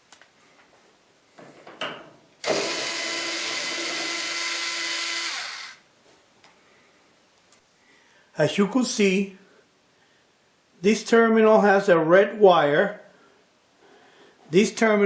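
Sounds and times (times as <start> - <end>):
power drill motor whining: 2.4 - 5.8.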